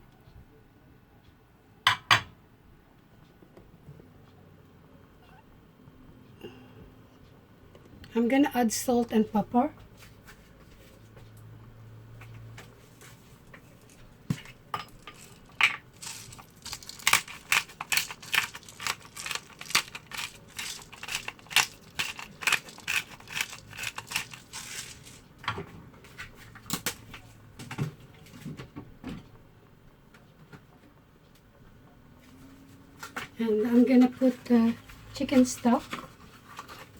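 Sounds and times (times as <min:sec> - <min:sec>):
faint steady hum: 0:00.0 - 0:32.4
utensils clinking on cookware: 0:14.7 - 0:25.2.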